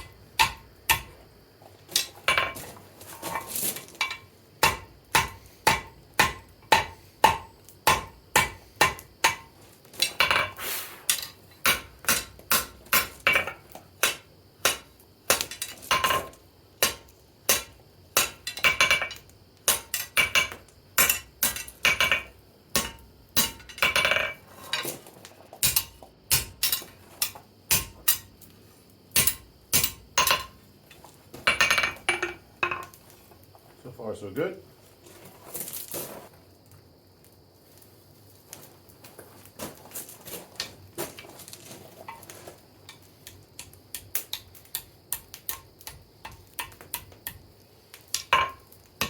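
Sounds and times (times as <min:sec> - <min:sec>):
hammer striking steel on anvil: 0:00.0 - 0:01.1, 0:04.0 - 0:09.5, 0:22.8 - 0:24.3, 0:25.6 - 0:28.3, 0:29.2 - 0:30.5.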